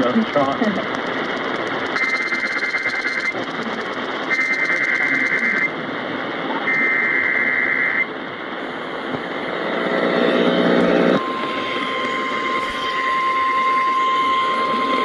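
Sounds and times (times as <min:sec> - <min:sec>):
radio static and hiss: 0:03.4 - 0:15.0
low buzzing tone: 0:08.4 - 0:15.0.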